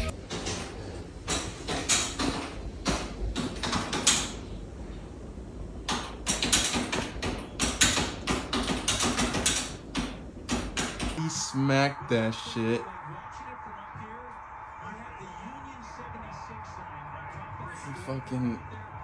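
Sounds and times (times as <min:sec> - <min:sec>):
sharp clattering knocks: 0:05.9 - 0:11.2.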